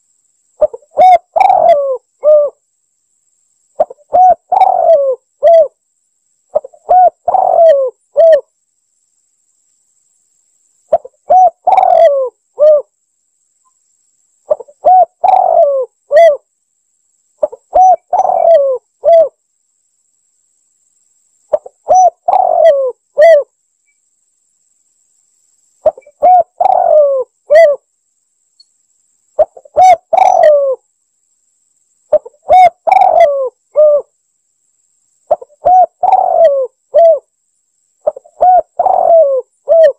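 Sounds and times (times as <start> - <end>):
dove cooing: 0.6 - 2.6, 3.8 - 5.8, 6.5 - 8.4, 10.9 - 12.9, 14.5 - 16.4, 17.4 - 19.4, 21.5 - 23.5, 25.8 - 27.8, 29.4 - 30.8, 32.1 - 34.1, 35.3 - 37.3, 38.0 - 39.9.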